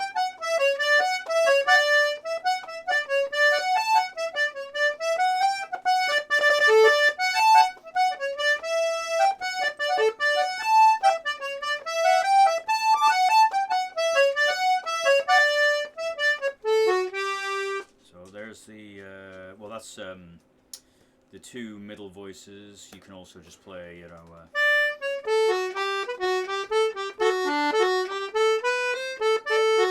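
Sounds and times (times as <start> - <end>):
button accordion playing a tune: 0.0 - 18.0, 24.5 - 29.9.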